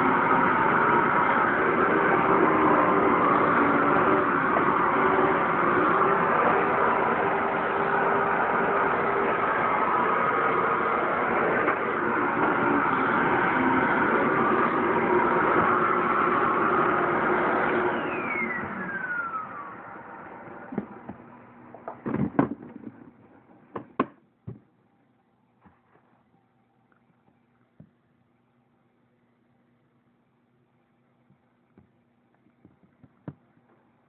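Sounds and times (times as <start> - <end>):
motor whine spinning down: 0.0 - 21.8
vacuum cleaner motor running: 0.0 - 21.8.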